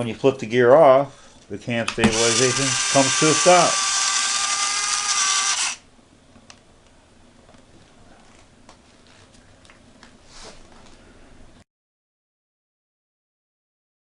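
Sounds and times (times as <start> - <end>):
camera gimbal servo whine: 2.1 - 5.8.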